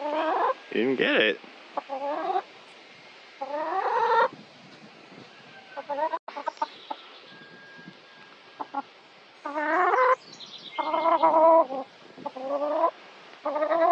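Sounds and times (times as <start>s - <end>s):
domestic fowl calling: 0.0s - 0.6s, 1.8s - 2.5s, 3.4s - 4.3s, 5.2s - 10.2s, 10.8s - 13.9s.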